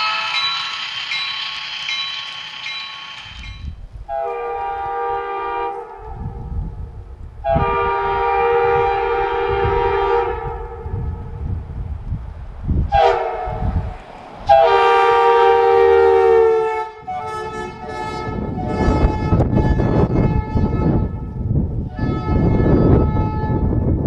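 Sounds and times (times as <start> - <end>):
multi-chime train horn: 0.0 - 6.1, 14.5 - 21.3.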